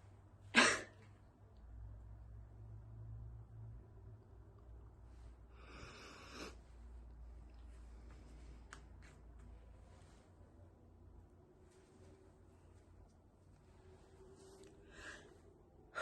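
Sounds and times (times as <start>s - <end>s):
stifled sneeze: 0.5s - 1.0s.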